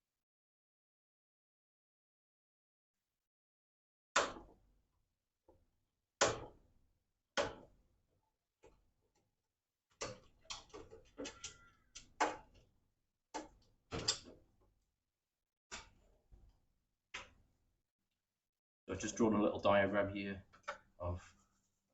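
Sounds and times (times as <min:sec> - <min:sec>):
hand tools clicking and snapping: 0:10.0 - 0:12.4.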